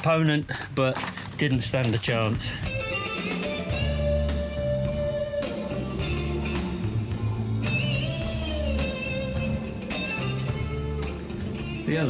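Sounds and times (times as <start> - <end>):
steady beat: 2.4 - 12.0
rock guitar lead line: 2.6 - 12.0
bass line: 3.7 - 12.0.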